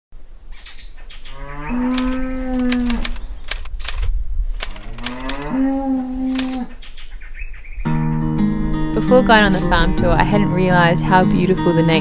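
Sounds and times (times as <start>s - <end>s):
cow mooing: 1.3s - 3.2s, 4.7s - 6.8s
sharp clicks: 1.8s - 5.6s, 6.3s - 7.0s.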